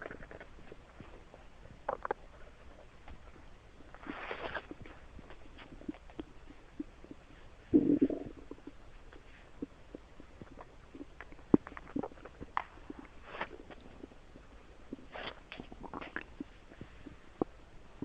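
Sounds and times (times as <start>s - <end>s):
stomach gurgling: 0.0s - 18.0s.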